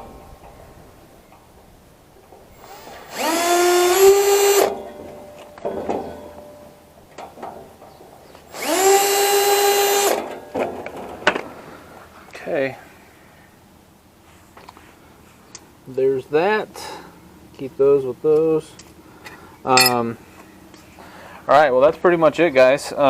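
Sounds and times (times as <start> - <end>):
power drill spinning: 2.6 - 4.8, 8.5 - 10.3.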